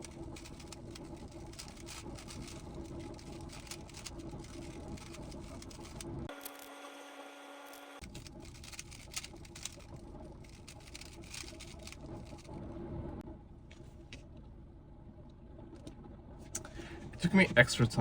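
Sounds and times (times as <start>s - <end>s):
plastic cube layers clicking: 0.0s - 6.7s, 8.0s - 12.4s.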